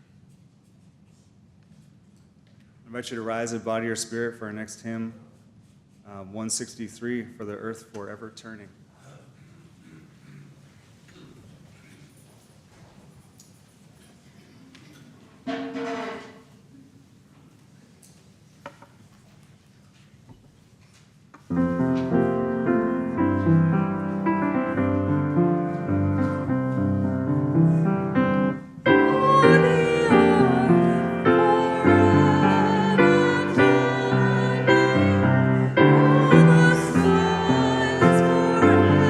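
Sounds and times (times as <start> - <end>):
piano playing a hymn: 21.5 - 39.0.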